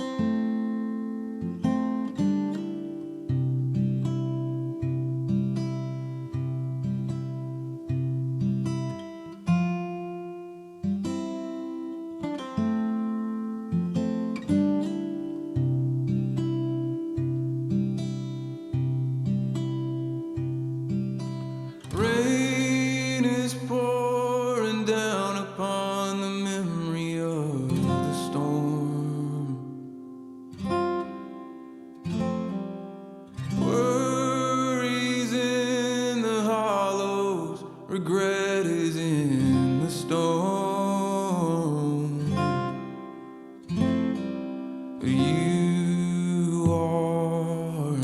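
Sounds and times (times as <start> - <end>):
acoustic guitar song: 0.0 - 48.0
person singing: 21.7 - 30.0, 33.4 - 43.2, 45.0 - 48.0.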